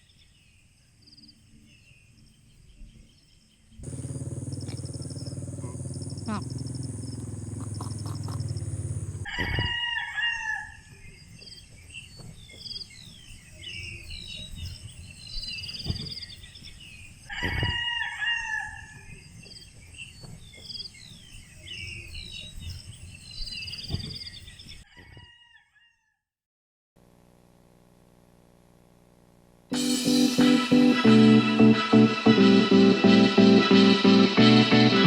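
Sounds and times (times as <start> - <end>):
small birds chirping: 2.1 - 9.3, 19.0 - 24.8
rooster crowing: 3.9 - 10.8, 17.3 - 19.0, 24.9 - 26.0.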